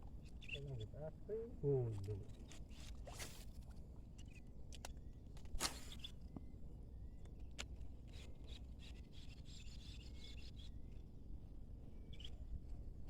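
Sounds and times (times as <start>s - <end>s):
distant birds chirping: 0.3s - 2.4s.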